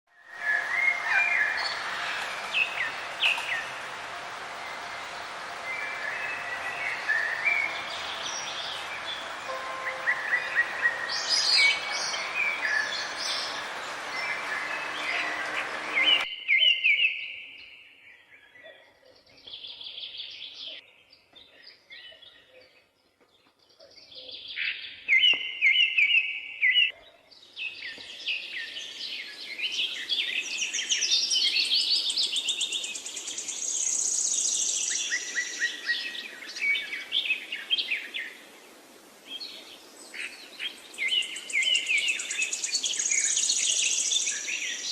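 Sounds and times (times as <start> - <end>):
birds chirping and calling: 0.4 - 16.8.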